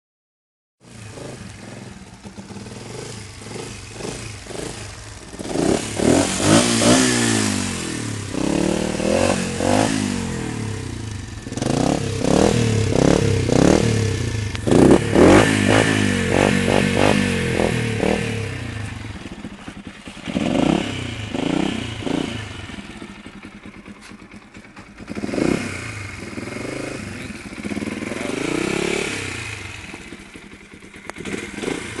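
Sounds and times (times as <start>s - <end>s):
motorcycle engine revving: 0.8s - 32.0s.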